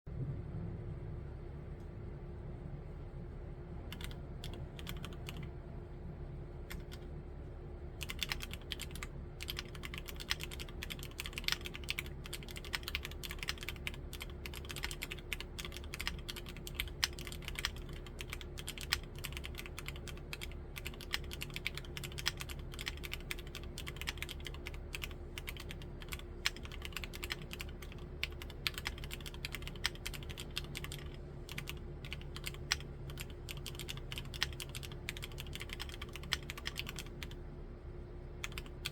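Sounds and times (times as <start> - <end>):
mechanical keyboard typing: 3.9 - 5.5, 6.7 - 7.0, 8.0 - 37.4, 38.4 - 38.9.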